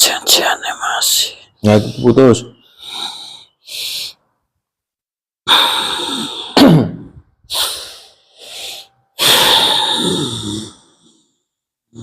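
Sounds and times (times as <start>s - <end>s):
person breathing hard: 2.6s - 4.3s, 5.5s - 6.6s, 7.5s - 11.4s.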